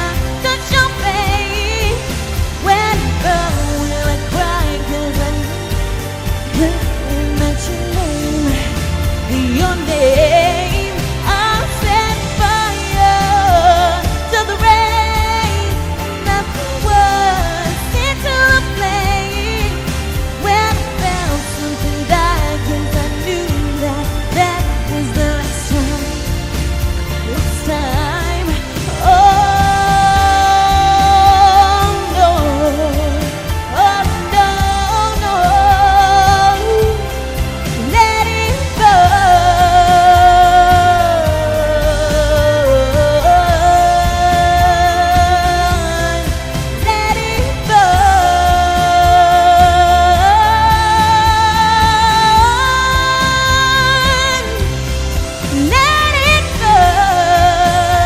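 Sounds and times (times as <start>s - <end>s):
instrumental accompaniment with beat: 0.0s - 58.0s
woman singing a pop ballad: 0.0s - 58.0s.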